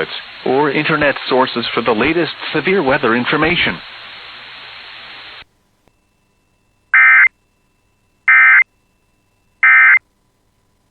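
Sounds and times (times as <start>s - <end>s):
radio hiss: 0.0s - 5.5s.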